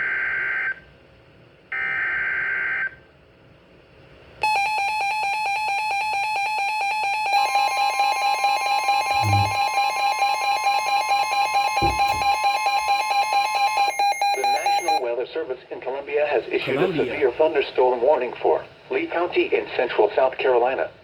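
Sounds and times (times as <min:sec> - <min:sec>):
pulsing electronic alert tone: 0:09.1 - 0:09.6
steady high tone: 0:09.1 - 0:09.6.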